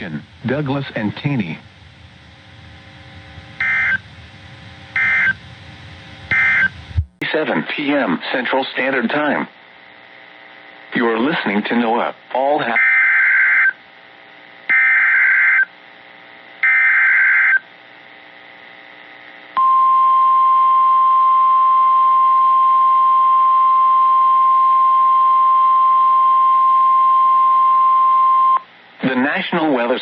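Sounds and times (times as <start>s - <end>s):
steady warning alarm tone: 3.5s - 4.1s, 4.9s - 5.4s, 6.3s - 6.8s, 12.8s - 13.8s, 14.7s - 15.7s, 16.6s - 17.6s.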